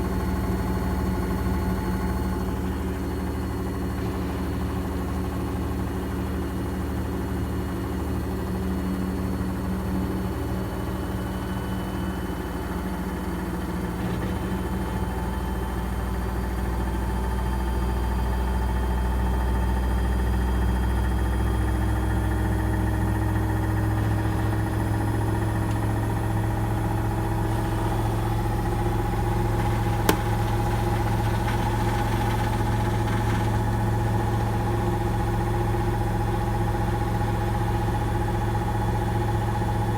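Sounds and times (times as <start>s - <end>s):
washing machine drum spinning: 23.3s - 39.9s.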